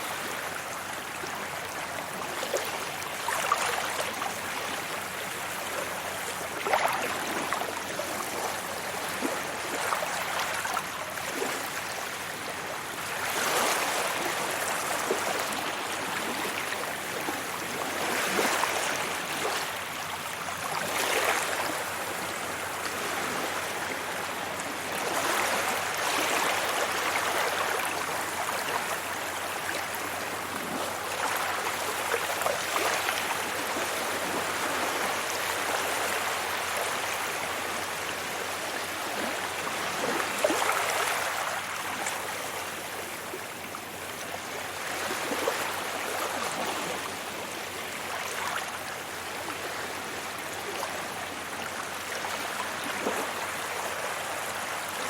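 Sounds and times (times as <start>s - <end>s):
waves breaking on a beach: 0.0s - 55.0s.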